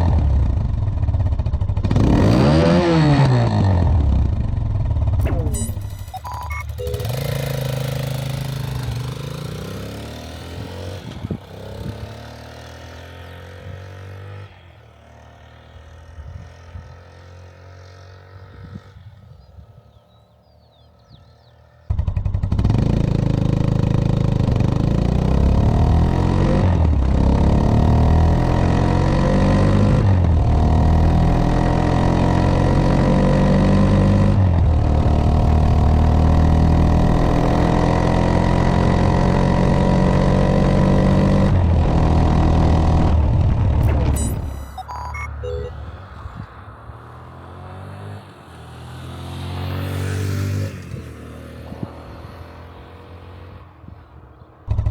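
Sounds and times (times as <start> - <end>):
motorcycle engine: 0.0 - 19.0, 21.3 - 51.1
engine revving through gears: 1.8 - 14.5, 21.9 - 46.0.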